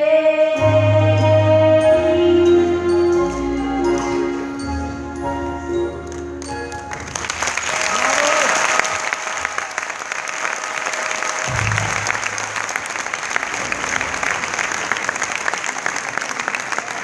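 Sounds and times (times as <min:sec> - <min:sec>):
audience applauding: 0:06.4 - 0:17.0.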